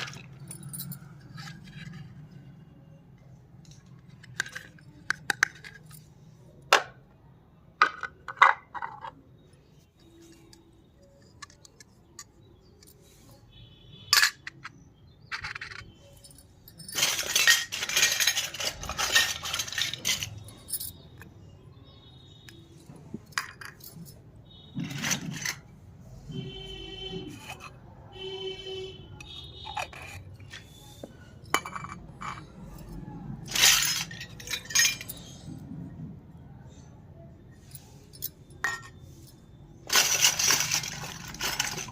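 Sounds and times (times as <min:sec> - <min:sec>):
rustling and scraping: 0:00.0 - 0:02.6, 0:16.9 - 0:21.0, 0:39.0 - 0:41.9
toy kitchen pieces clinking: 0:00.0 - 0:02.6, 0:03.4 - 0:07.1, 0:07.8 - 0:13.1, 0:14.1 - 0:21.5, 0:22.5 - 0:25.7, 0:27.3 - 0:27.8, 0:29.2 - 0:35.6, 0:37.6 - 0:41.9.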